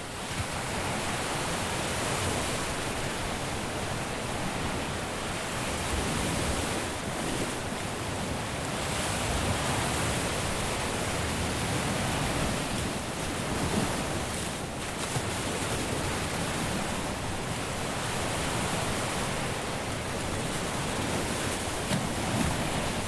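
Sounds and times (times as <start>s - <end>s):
waves breaking on a beach: 0.0s - 23.0s.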